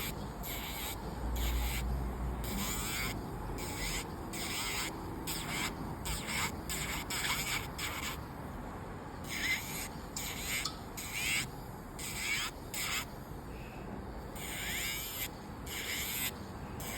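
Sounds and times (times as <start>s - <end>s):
electric nail drill whining: 0.0s - 1.9s, 2.5s - 8.2s.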